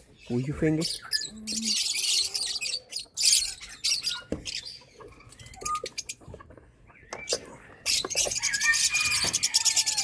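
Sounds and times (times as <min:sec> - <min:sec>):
thin bird chirps: 0:00.2 - 0:06.3.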